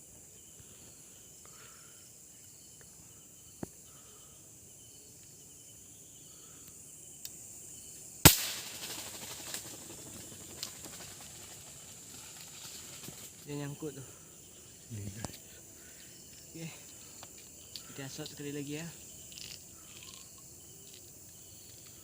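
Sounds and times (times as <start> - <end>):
night insects chirring: 0.0 - 22.0
air rifle shot: 8.2 - 9.2
faint clicks: 17.1 - 18.4.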